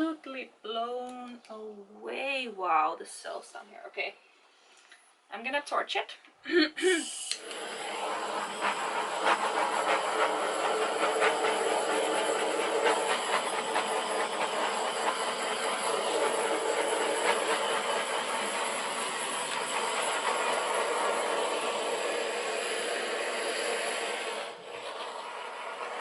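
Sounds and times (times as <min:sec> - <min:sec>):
torch flame hissing and crackling: 0:07.0 - 0:26.0.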